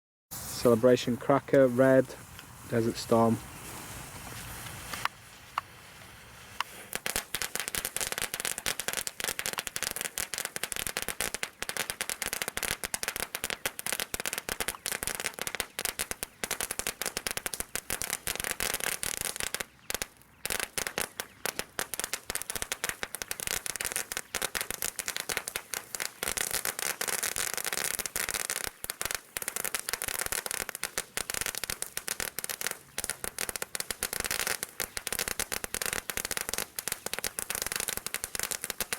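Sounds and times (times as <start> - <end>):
firework crackling pops: 0.3 - 38.9.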